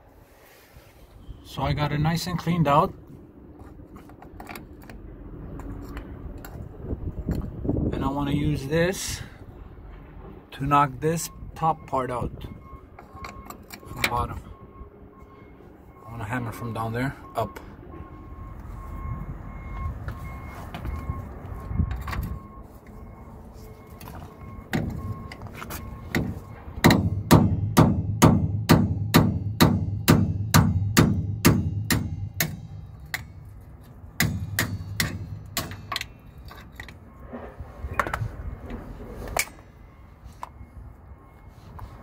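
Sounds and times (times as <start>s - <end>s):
hammer striking metal: 26.1s - 33.4s, 34.2s - 36.4s.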